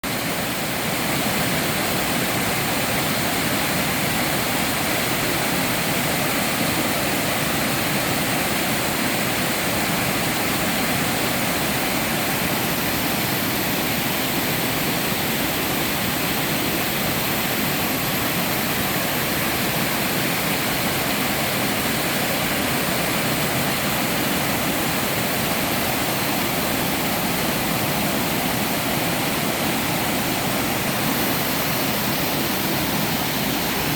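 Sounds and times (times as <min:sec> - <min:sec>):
waterfall pouring into a pool: 0:00.0 - 0:33.9.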